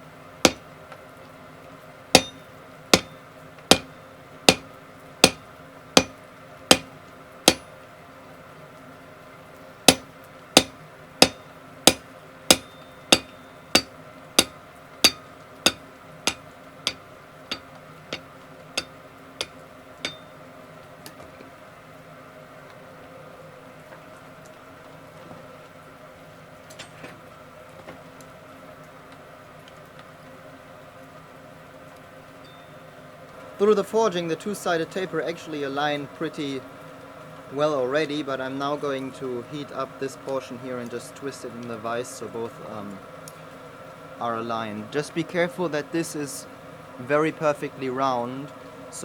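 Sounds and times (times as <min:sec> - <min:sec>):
faint steady hum: 0:00.0 - 0:49.0
hammer striking steel on anvil: 0:02.2 - 0:03.9, 0:04.5 - 0:05.4, 0:06.0 - 0:06.9, 0:07.5 - 0:07.7, 0:09.9 - 0:20.4.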